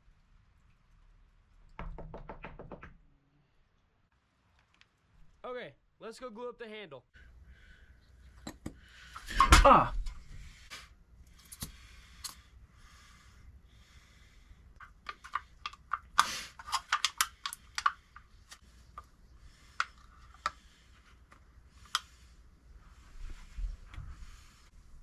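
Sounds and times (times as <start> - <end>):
small parts clicking and tapping: 14.8 - 20.6.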